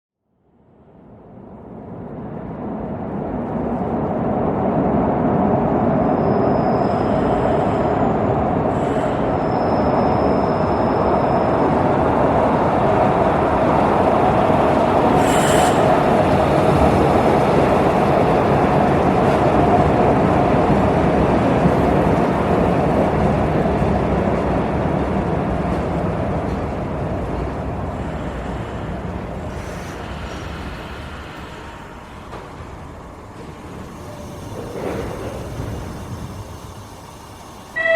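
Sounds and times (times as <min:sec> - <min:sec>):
train wheels rumbling on rails: 0:01.4 - 0:37.9
high wheel squeals: 0:15.1 - 0:16.2.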